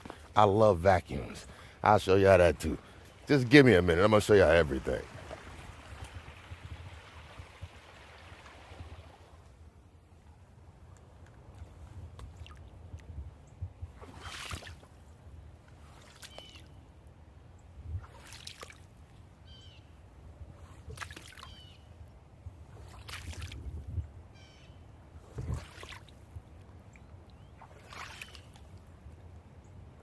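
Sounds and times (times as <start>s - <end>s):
creek rumbling: 0.0s - 9.6s.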